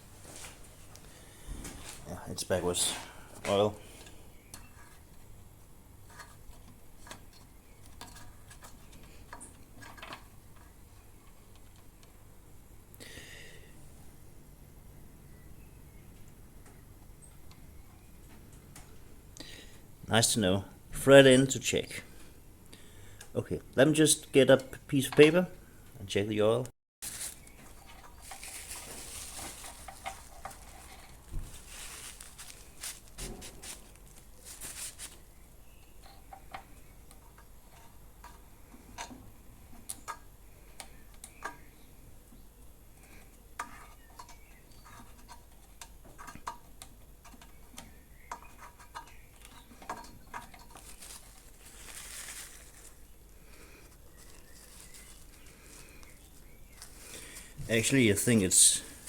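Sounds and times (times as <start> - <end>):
paper rustling: 27.0 - 35.2, 50.3 - 59.0.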